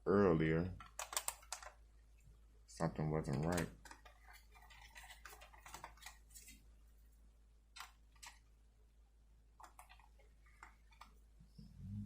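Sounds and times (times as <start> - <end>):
small parts clicking and tapping: 0.8 - 1.8.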